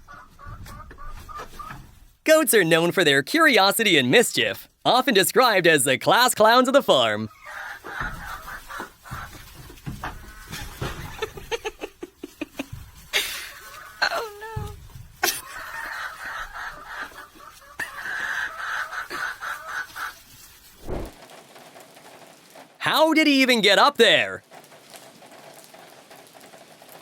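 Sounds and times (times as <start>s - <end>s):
farm animal calls: 0.0s - 2.0s, 6.5s - 11.2s, 12.7s - 20.5s.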